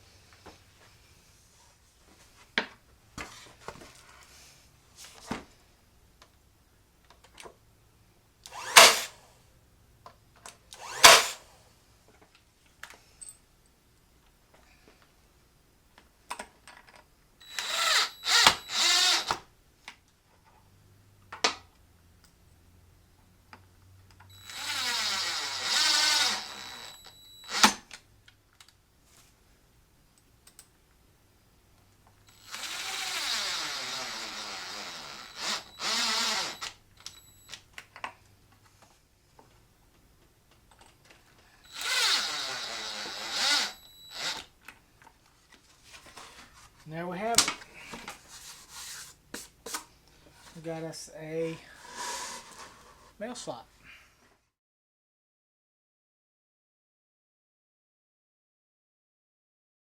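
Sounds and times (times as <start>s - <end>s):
power drill running: 8.5s - 9.2s, 10.7s - 11.5s, 17.4s - 19.4s, 24.3s - 27.9s, 32.3s - 37.3s, 41.7s - 44.5s.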